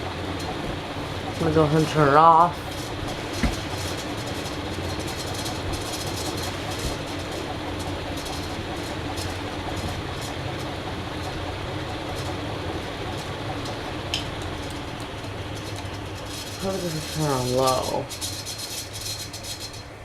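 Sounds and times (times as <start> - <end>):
ceiling fan motor hum and air: 0.0 - 20.0.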